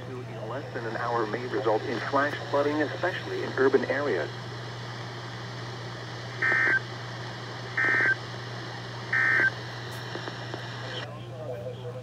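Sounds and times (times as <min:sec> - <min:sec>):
steady low hum: 0:00.0 - 0:12.0
two-tone warbling data bursts: 0:06.4 - 0:06.9, 0:07.8 - 0:08.2.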